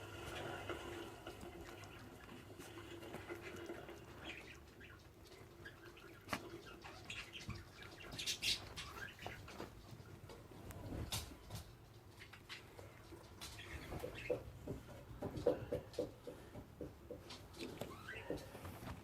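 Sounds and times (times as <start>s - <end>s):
puppies squeaking and whimpering: 17.8s - 18.5s.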